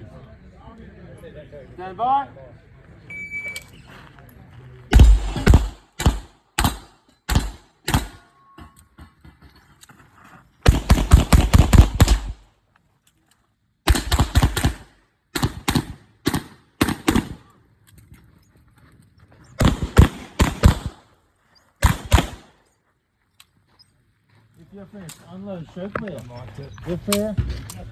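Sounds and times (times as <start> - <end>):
pistol shots: 4.9 - 8.3, 10.7 - 12.5, 13.9 - 17.5, 19.6 - 21.1, 21.8 - 22.6.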